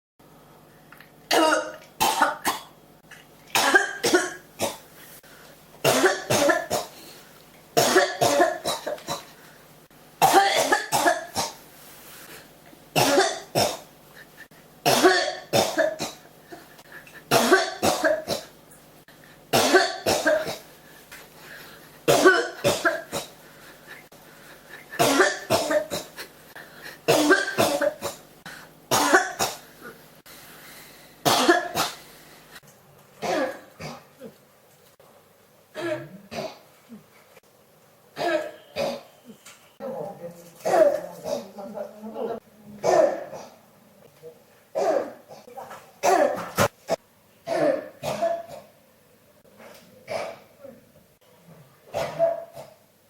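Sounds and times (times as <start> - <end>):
person coughing harshly: 1.3 - 2.8, 3.6 - 4.8, 5.8 - 7.0, 7.8 - 9.3, 10.2 - 11.6, 13.0 - 13.9, 14.8 - 16.3, 17.3 - 18.5, 19.5 - 20.7, 22.0 - 23.4, 24.9 - 26.3, 27.0 - 28.2, 28.9 - 30.0, 31.2 - 32.0, 33.2 - 34.1, 35.7 - 36.7, 38.2 - 39.2, 40.6 - 41.6, 42.8 - 43.6, 44.8 - 48.7, 50.1 - 50.6, 51.9 - 52.8.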